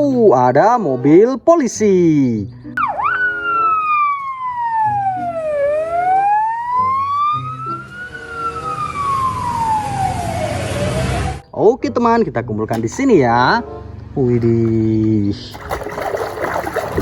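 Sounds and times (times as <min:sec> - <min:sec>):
low steady notes: 0:02.3 - 0:17.0
police siren wailing: 0:02.8 - 0:11.4.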